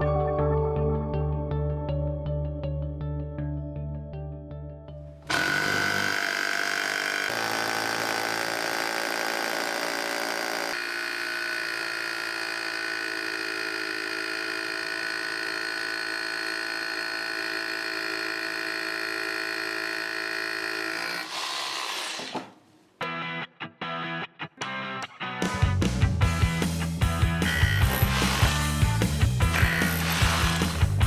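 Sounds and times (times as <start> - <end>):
hammer drill running: 5.3 - 22.6, 26.2 - 31.0.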